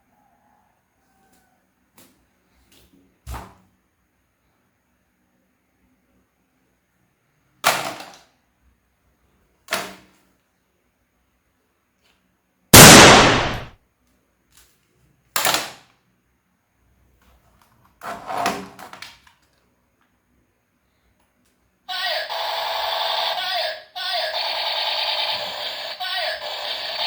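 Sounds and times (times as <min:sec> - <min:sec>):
gunshot-like bangs: 0:12.8 - 0:13.7.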